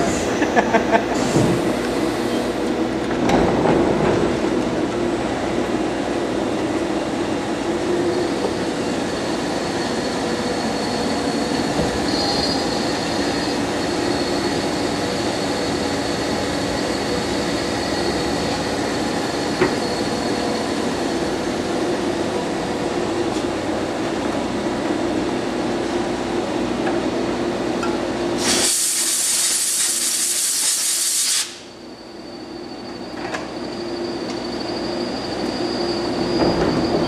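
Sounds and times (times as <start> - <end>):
high whine: 4.8 - 24.1.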